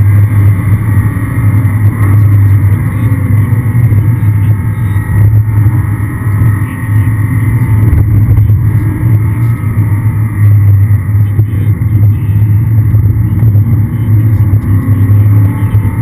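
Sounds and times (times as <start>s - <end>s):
car engine running hard: 0.0s - 16.0s.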